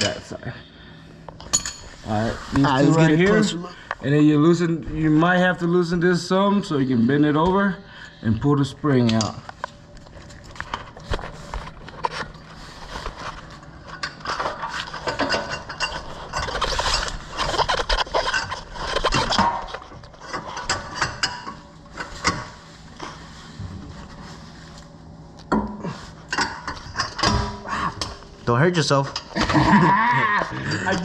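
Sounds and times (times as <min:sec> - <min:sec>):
metal scraping and rubbing: 0:10.5 - 0:24.9.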